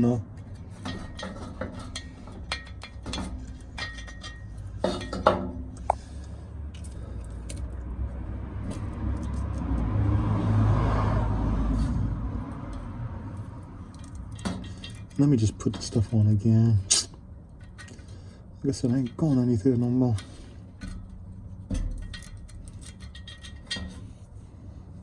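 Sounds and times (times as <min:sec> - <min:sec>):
metal clatter: 0:00.3 - 0:06.1, 0:12.7 - 0:16.2, 0:17.4 - 0:24.3
passing vehicle: 0:05.6 - 0:15.6.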